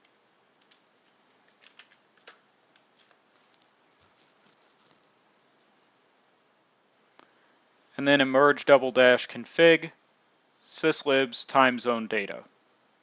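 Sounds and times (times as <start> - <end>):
faint keyboard typing: 0.0 - 5.2.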